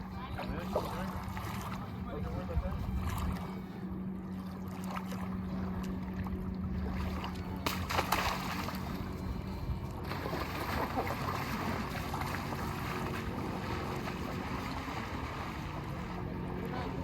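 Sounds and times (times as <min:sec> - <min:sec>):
low steady hum: 0:00.0 - 0:17.0
water splashing and rushing: 0:00.0 - 0:17.0
skimboard slapping water: 0:06.8 - 0:09.0, 0:10.0 - 0:17.0.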